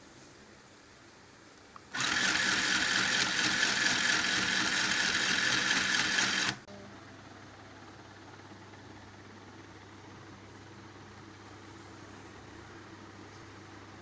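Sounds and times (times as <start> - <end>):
sewing machine running: 1.9 - 6.7.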